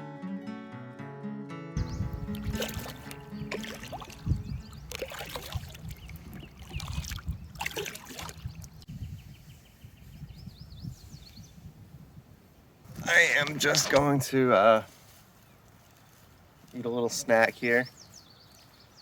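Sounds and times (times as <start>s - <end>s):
kayak paddle splashing: 2.3s - 8.8s
water trickling off paddle: 2.3s - 8.8s.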